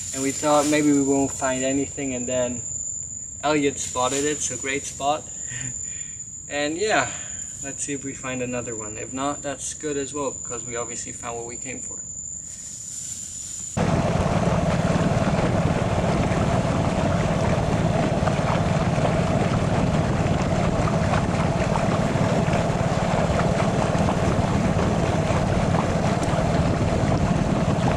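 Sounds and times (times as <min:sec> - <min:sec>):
insect trill: 0:00.0 - 0:13.8
boat engine running: 0:13.8 - 0:27.9
wind on microphone: 0:13.8 - 0:27.9.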